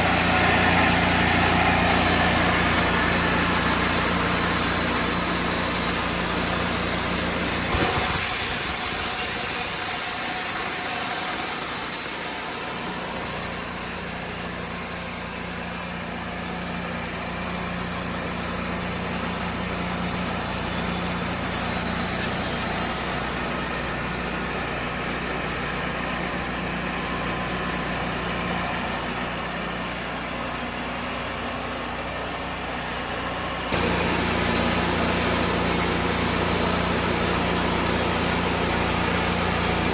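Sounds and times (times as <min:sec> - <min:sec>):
engine humming: 0:00.0 - 0:14.5, 0:33.5 - 0:39.9.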